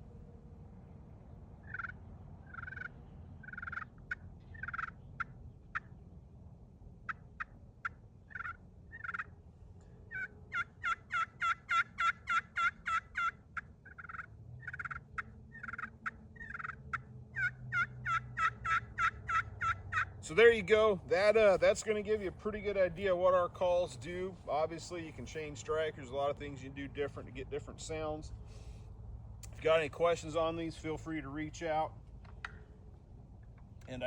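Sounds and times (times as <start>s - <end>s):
turkey call yelps and clucks: 1.6s - 5.9s, 7.1s - 9.4s, 10.1s - 20.2s.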